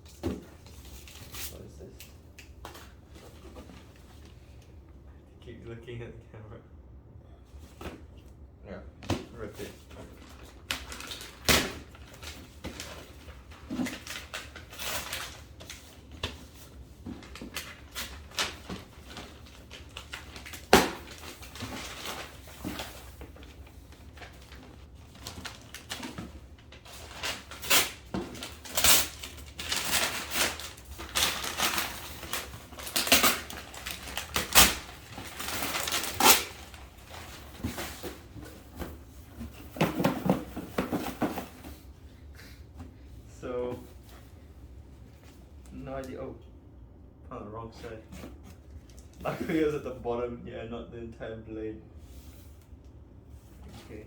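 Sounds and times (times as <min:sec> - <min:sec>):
wrapping paper ripping: 0:26.7 - 0:37.2.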